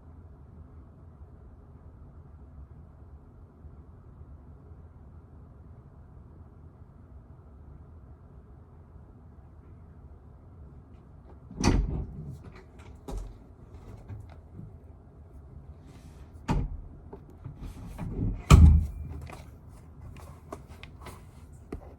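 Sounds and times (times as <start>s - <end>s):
door knocks and clunks: 11.5s - 13.4s, 16.5s - 16.9s, 17.5s - 19.4s.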